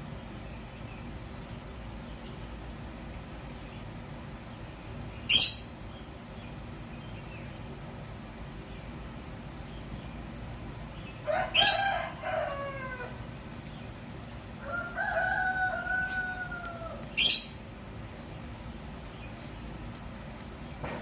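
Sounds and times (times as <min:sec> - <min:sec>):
rooster crowing: 0:11.2 - 0:13.3, 0:14.6 - 0:17.3.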